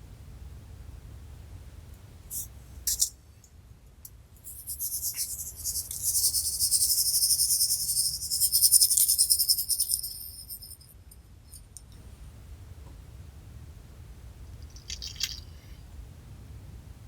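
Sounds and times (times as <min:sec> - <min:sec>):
high-pitched crackling rattle: 0:04.9 - 0:10.9, 0:14.6 - 0:15.6.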